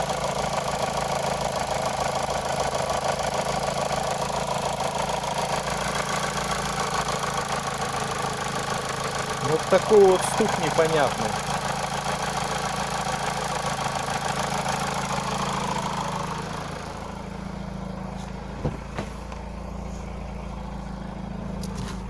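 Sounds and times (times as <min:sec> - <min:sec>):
car engine idling with knock: 0:00.0 - 0:22.0
short sharp knocks: 0:18.6 - 0:19.4.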